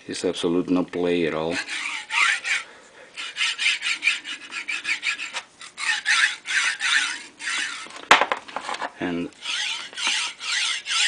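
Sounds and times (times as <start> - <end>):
bearing blocks sliding along steel rods: 3.2 - 11.0.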